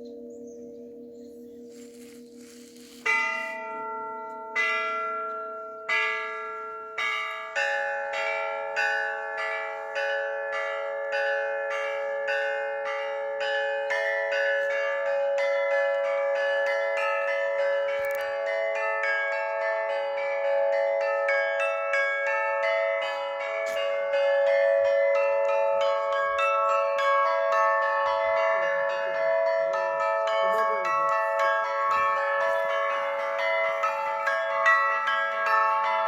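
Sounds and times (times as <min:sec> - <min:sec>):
low bell humming: 0:00.0 - 0:07.2
church bells ringing: 0:00.0 - 0:36.0.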